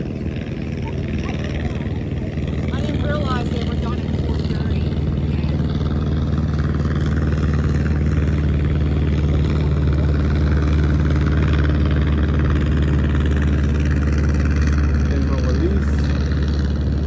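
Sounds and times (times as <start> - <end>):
engine drone: 0.0 - 17.0.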